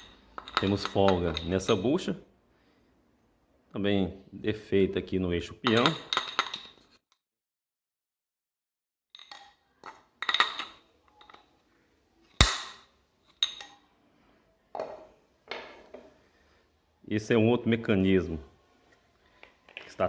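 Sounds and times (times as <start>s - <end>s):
metal parts clinking and knocking: 0.0s - 1.9s, 5.6s - 7.0s, 9.2s - 11.5s
sharp metallic impact ringing: 12.4s - 12.9s.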